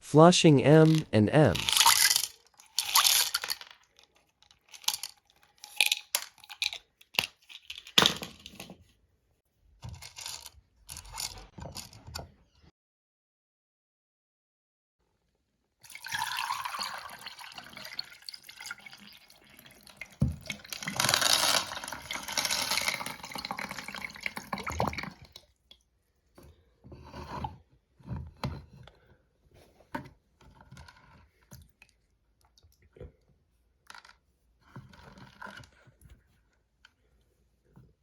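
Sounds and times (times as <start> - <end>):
toilet flushing: 15.9 - 25.3.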